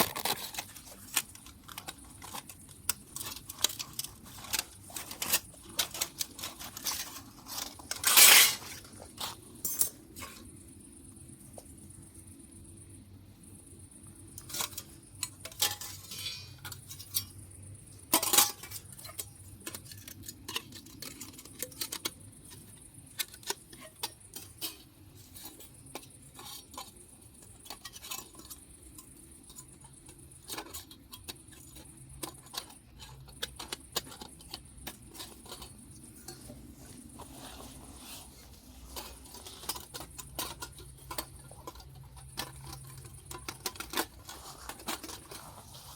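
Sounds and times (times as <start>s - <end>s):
small clicks and crackles: 0.0s - 10.6s, 14.0s - 45.9s
scrape: 3.1s - 10.5s, 32.5s - 45.9s.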